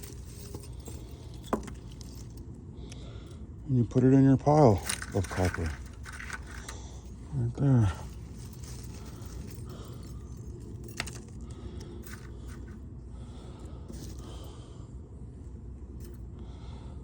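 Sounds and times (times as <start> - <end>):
metal pieces clinking and scraping: 0.0 - 2.4, 4.6 - 7.2, 7.8 - 12.8, 13.9 - 14.2
steady low hum: 0.0 - 17.0.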